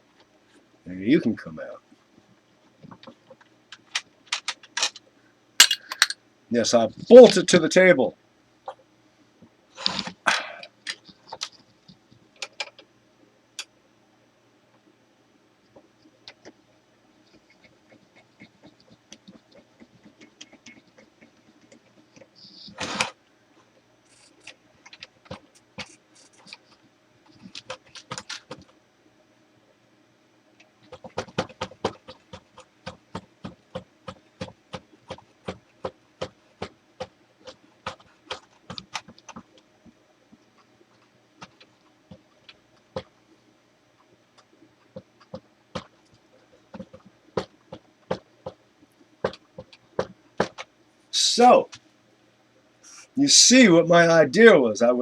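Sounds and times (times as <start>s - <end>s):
metal tools clicking on metal: 5.6s - 6.2s.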